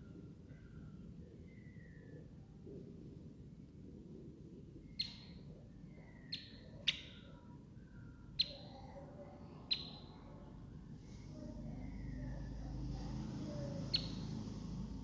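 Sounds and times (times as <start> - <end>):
baby birds chirping: 13.0 - 15.0.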